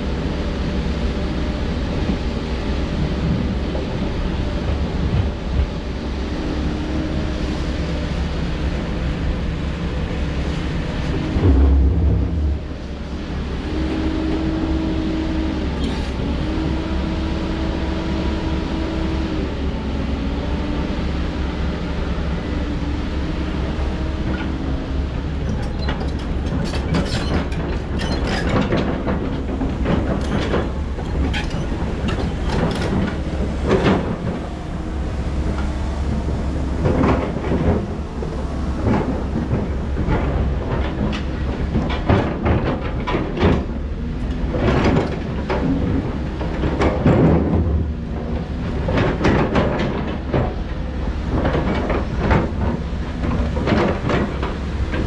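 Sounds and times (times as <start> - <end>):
excavator diesel engine droning: 0.0 - 55.0
hydraulic whine: 9.9 - 49.2
metallic clanks and knocks: 25.5 - 41.2.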